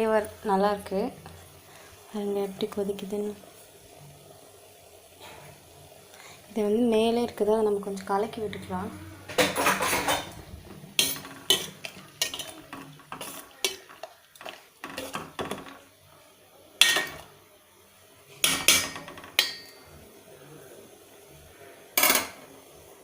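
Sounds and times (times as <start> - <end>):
liquid boiling: 0.0 - 23.0.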